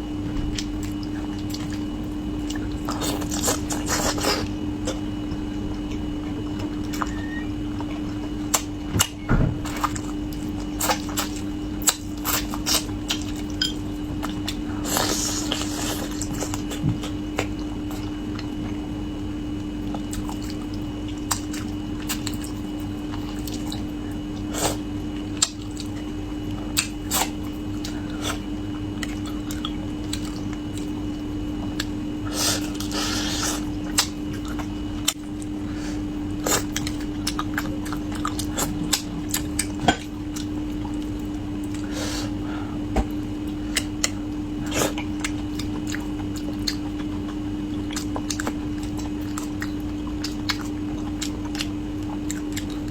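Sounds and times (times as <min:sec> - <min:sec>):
low steady hum: 0:00.0 - 0:52.9
person chewing and biting: 0:00.6 - 0:05.2, 0:08.5 - 0:18.6, 0:31.6 - 0:42.4, 0:43.0 - 0:52.9.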